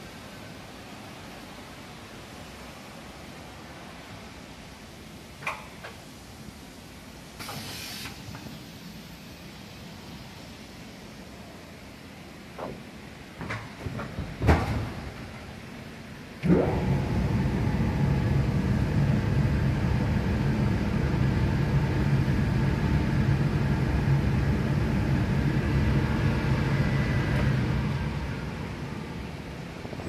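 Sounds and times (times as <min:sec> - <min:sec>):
machine motor spinning up and humming: 0:16.4 - 0:28.2.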